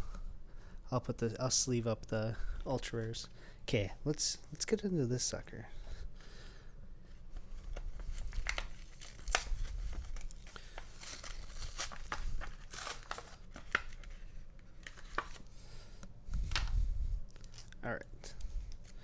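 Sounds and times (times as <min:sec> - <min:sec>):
packaging torn and crinkled: 0:07.5 - 0:15.5, 0:17.3 - 0:19.0.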